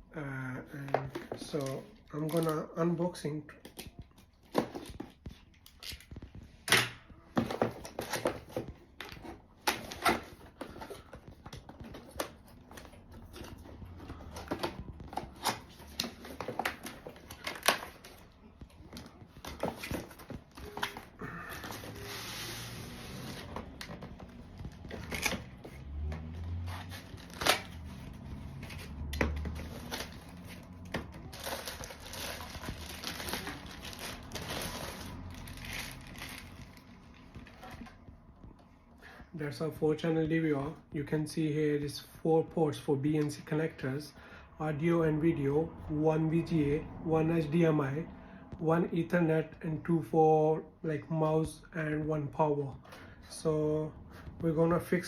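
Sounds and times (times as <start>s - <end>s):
packaging rustling and tearing: 7.4s - 38.0s.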